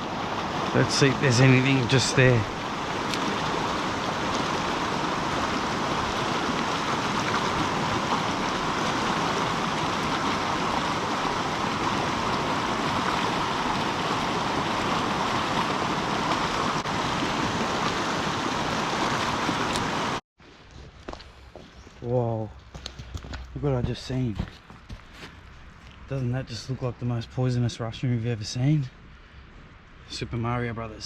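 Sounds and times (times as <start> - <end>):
river rushing: 0.0 - 20.2.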